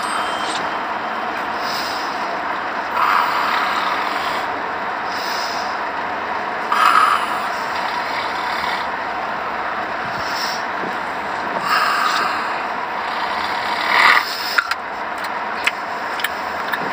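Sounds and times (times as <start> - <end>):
rasping snoring: 2.9 - 4.5, 6.7 - 8.9, 11.6 - 14.4.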